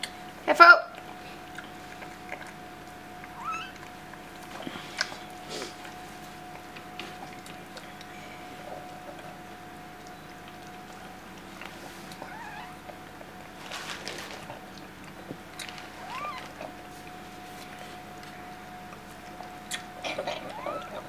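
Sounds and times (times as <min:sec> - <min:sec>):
faint steady hum: 0:00.0 - 0:21.0
high mewing squeaks: 0:03.4 - 0:03.8, 0:12.2 - 0:12.8, 0:16.0 - 0:16.6, 0:20.5 - 0:21.0
rustling and handling: 0:13.6 - 0:14.6.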